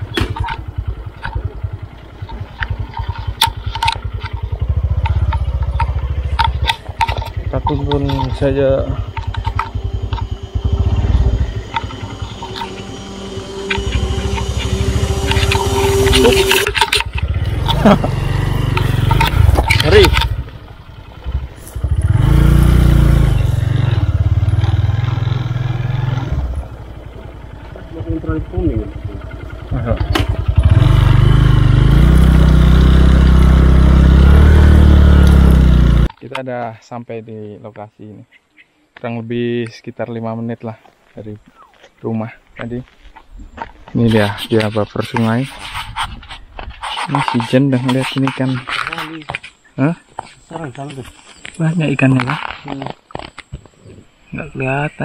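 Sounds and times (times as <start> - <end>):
motorcycle rattles and knocks: 0.0 - 12.6, 16.6 - 22.2, 26.8 - 32.7
small motorcycle engine: 0.0 - 36.1.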